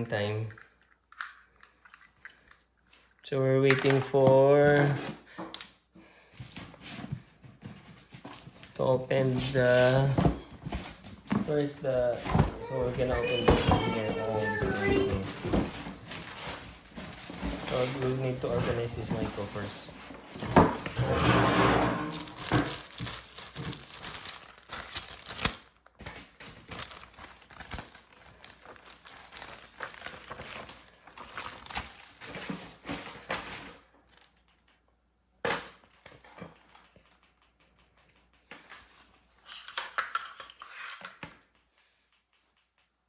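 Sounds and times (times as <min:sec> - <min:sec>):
packaging crinkling and rustling: 0:06.4 - 0:21.2, 0:22.0 - 0:34.6, 0:38.6 - 0:41.2.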